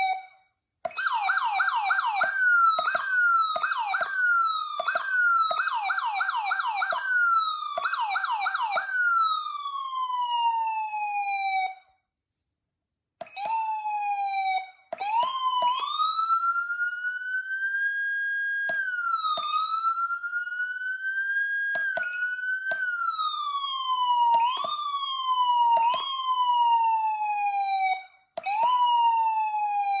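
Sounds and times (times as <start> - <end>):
electronic siren yelp and wail: 0.0 - 11.9, 13.2 - 30.0
sharp siren clicks: 0.9 - 9.7, 14.9 - 17.6, 18.6 - 20.9, 21.5 - 30.0.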